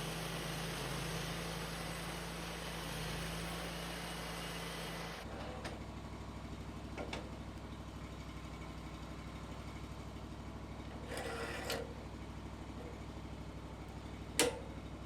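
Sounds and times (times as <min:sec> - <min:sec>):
engine idling: 0:00.0 - 0:11.2, 0:11.8 - 0:15.0.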